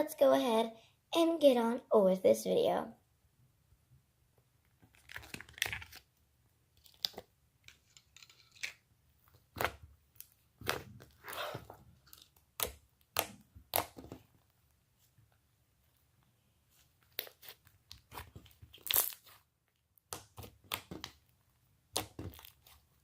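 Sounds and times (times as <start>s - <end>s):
hands squishing slime: 4.8s - 6.1s, 8.6s - 14.4s, 16.7s - 23.0s.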